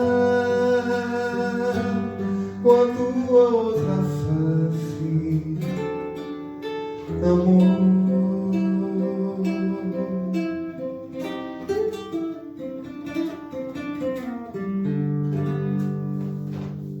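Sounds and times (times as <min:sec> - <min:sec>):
acoustic guitar playing: 0:00.0 - 0:17.0.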